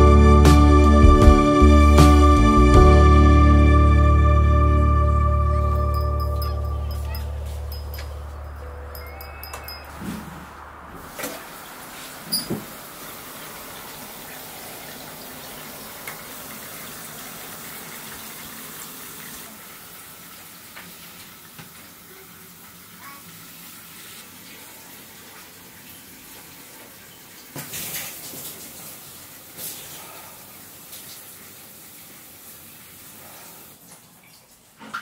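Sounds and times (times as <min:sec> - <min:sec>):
water running from tap into bathtub: 0:11.0 - 0:35.0.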